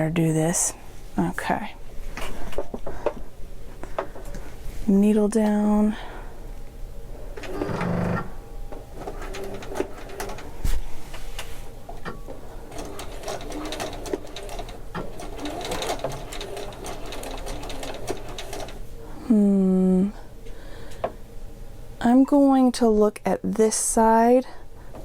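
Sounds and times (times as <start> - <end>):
sewing machine stitching: 7.4 - 8.3, 12.0 - 18.8.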